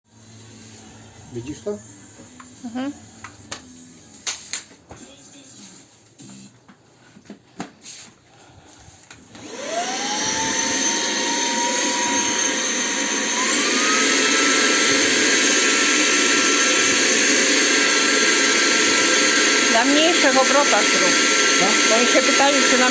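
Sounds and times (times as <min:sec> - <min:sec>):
handheld vacuum cleaner running: 0:09.3 - 0:22.9.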